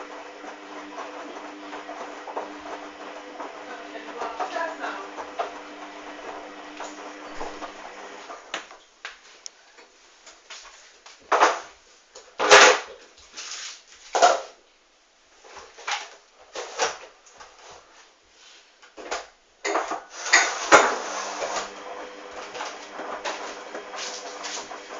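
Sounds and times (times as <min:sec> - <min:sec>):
washing machine humming: 0:00.0 - 0:08.5, 0:20.1 - 0:24.9.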